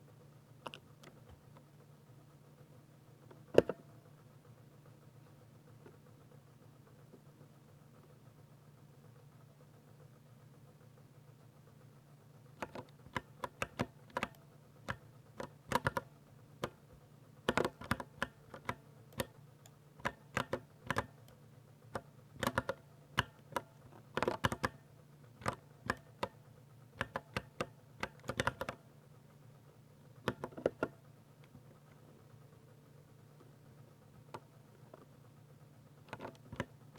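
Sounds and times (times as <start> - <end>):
faint low hum: 0.0 - 36.9
mechanical keyboard key clacks: 12.6 - 16.8, 17.5 - 19.4, 20.0 - 21.4, 22.0 - 24.8, 25.4 - 26.4, 27.0 - 28.8.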